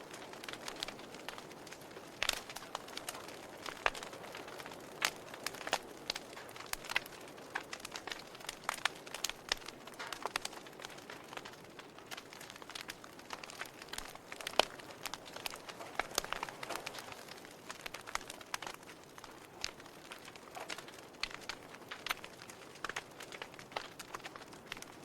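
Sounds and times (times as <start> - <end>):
wood fire pops and snaps: 0.0 - 25.0.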